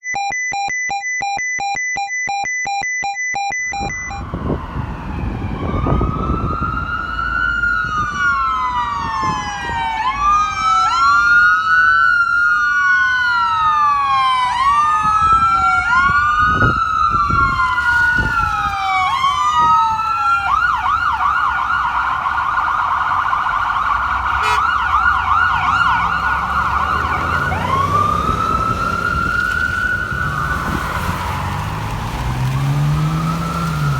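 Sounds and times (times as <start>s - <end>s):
ambulance siren wailing and yelping: 0.0s - 33.9s
heavy traffic noise: 3.6s - 33.9s
horn blaring: 24.0s - 33.9s.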